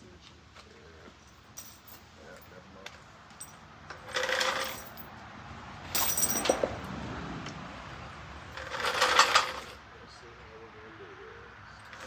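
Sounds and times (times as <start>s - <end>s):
metal clattering and jingling: 1.2s - 2.6s, 3.3s - 5.1s, 5.9s - 6.8s, 8.5s - 9.8s.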